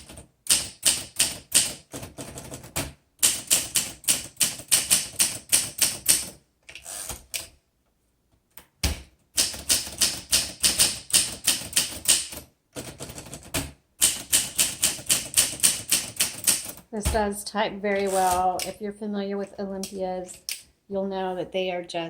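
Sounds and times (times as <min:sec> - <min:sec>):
typewriter keys striking: 0:00.0 - 0:06.4, 0:08.8 - 0:16.8.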